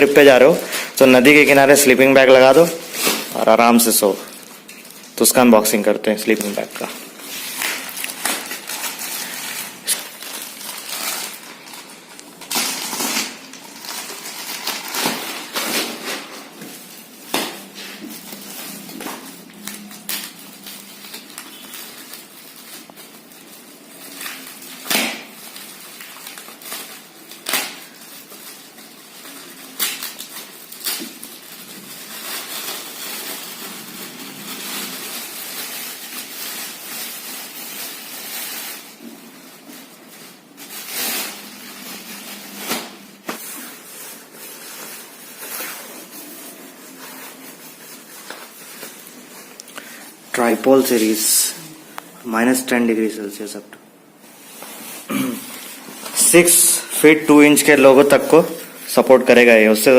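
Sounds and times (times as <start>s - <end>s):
packaging rustling and crinkling: 0.0s - 53.6s, 54.2s - 59.9s.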